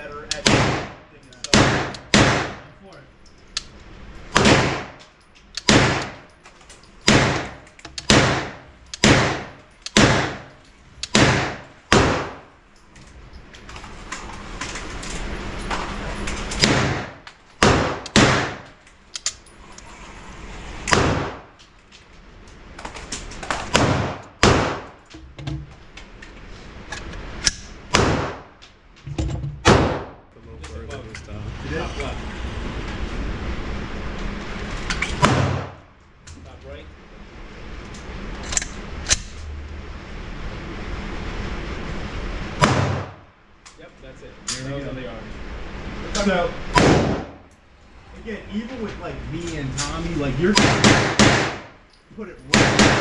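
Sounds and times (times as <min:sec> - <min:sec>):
gunshots: 0:00.4 - 0:02.7, 0:04.3 - 0:05.0, 0:05.6 - 0:06.2, 0:07.1 - 0:10.5, 0:11.1 - 0:12.5, 0:16.6 - 0:18.7, 0:20.9 - 0:21.5, 0:23.6 - 0:25.0, 0:27.9 - 0:28.5, 0:29.6 - 0:30.2, 0:35.2 - 0:35.8, 0:42.6 - 0:43.2, 0:46.7 - 0:47.4, 0:50.5 - 0:51.8, 0:52.5 - 0:53.0.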